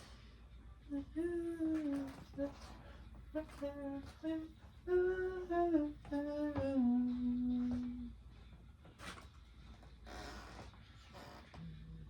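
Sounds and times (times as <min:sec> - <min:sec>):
person humming a melody: 0:00.9 - 0:08.2.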